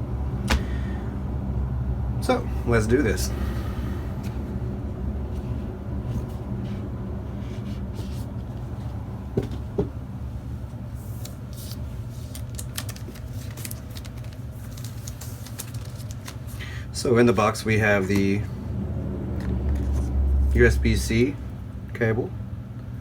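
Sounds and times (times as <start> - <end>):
steady low hum: 0.0 - 23.0
packaging rustling and scraping: 11.0 - 16.7.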